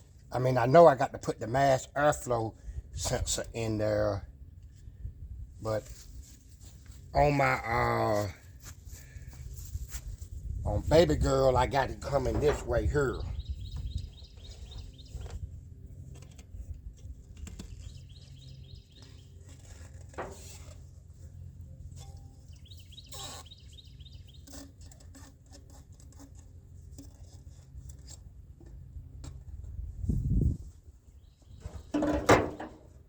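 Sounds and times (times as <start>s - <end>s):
low steady hum: 0.0s - 33.0s
bird chirping trill: 13.3s - 15.3s, 17.7s - 19.4s, 22.0s - 24.7s.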